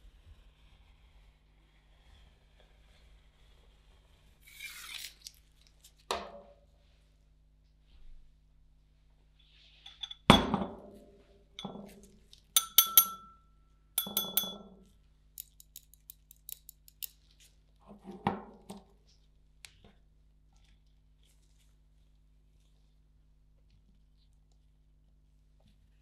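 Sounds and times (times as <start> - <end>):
utensils clinking on dishware: 12.6 - 13.4, 14.0 - 14.7.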